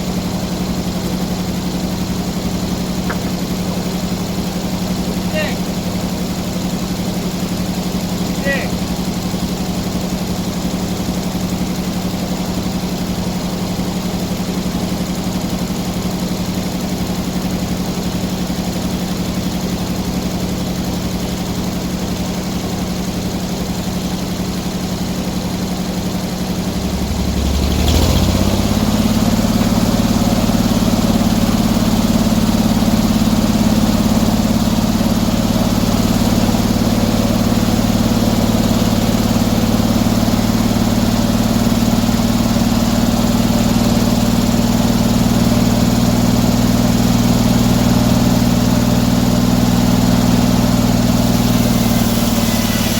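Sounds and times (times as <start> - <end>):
engine idling and revving: 0.0 - 52.9.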